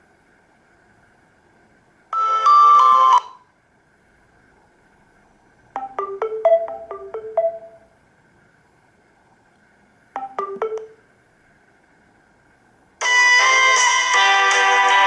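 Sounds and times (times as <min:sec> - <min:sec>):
marimba-like ringtone notes: 0:05.8 - 0:07.9, 0:10.2 - 0:11.0
synthesized phone chord: 0:10.2 - 0:11.0.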